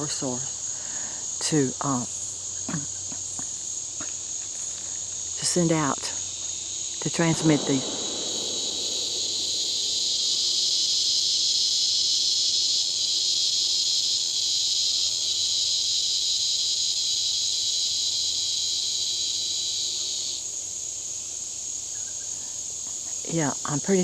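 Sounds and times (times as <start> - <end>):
insect chorus buzzing: 0.0 - 24.0.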